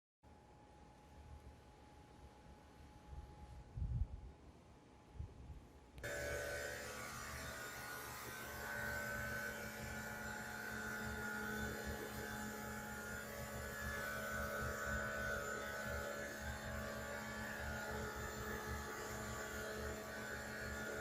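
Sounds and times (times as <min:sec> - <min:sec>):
machinery hum: 0:05.9 - 0:21.0
wavering high whine: 0:06.0 - 0:21.0.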